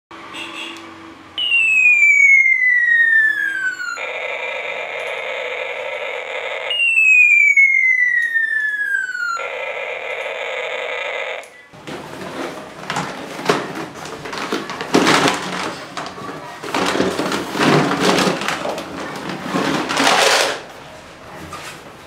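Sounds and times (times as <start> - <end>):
falling whistle tone: 1.4 - 4.0.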